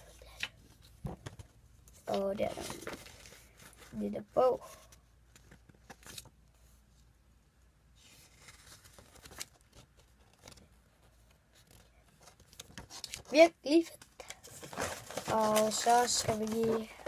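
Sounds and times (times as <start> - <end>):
paper rustling: 0.0 - 6.8, 8.0 - 17.0
light clicks of toy packaging: 11.6 - 17.0.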